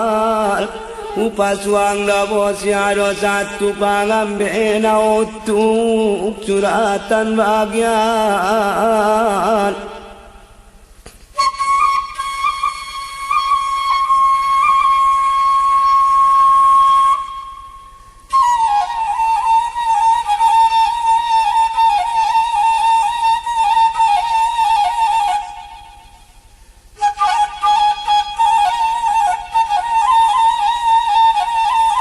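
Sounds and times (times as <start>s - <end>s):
solo flute playing: 11.3s - 32.0s.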